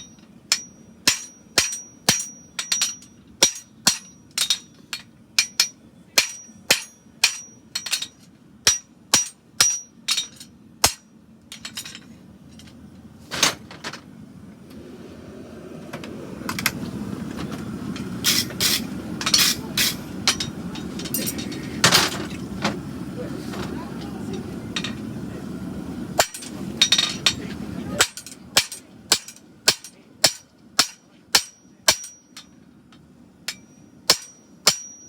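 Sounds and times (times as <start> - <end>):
hammer ringing on anvil: 0.0 - 4.7, 5.4 - 11.0, 28.0 - 32.6, 33.5 - 35.0
steady rushing noise: 14.2 - 28.7.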